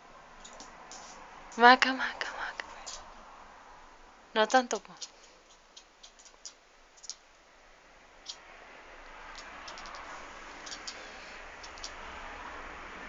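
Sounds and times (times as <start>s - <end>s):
kitten chattering clicks: 4.5s - 7.3s, 9.3s - 11.0s, 11.6s - 12.0s.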